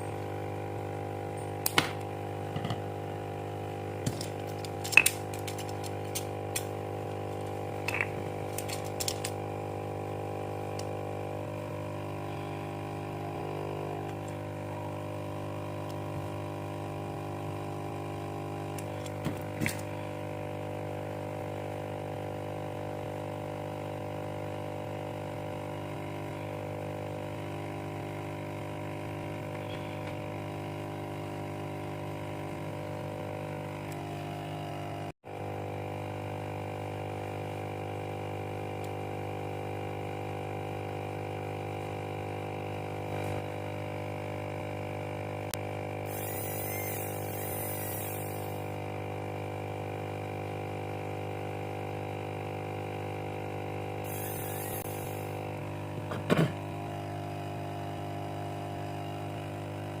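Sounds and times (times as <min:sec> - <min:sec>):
electric hum: 0:46.1 - 0:48.9, 0:54.0 - 0:55.8.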